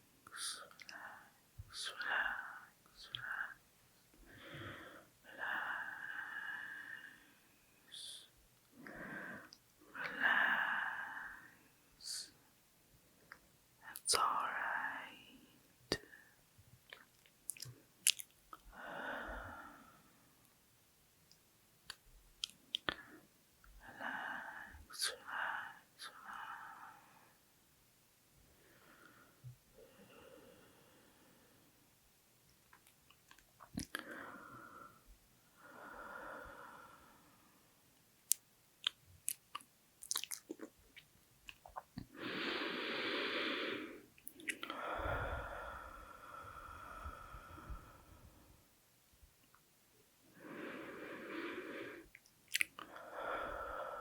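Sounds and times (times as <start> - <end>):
wet mouth clicks: 16.9 - 18.6, 21.3 - 23.1, 32.7 - 34.0, 38.2 - 42.1, 44.2 - 44.8, 52.1 - 52.9
heavy breath out: 42.1 - 48.6.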